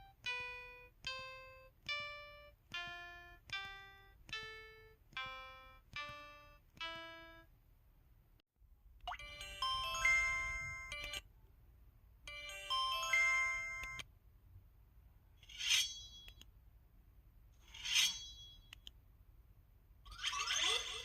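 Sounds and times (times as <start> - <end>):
electronic chime jingle: 9.1 - 11.2.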